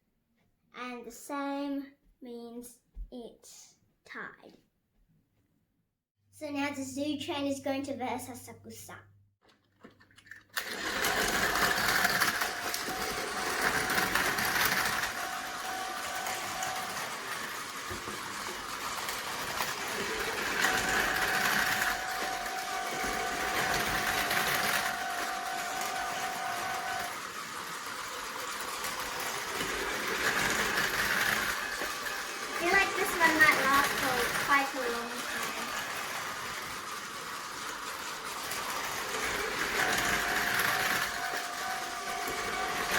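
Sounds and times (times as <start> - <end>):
toy train motors whirring: 9.6 - 42.9.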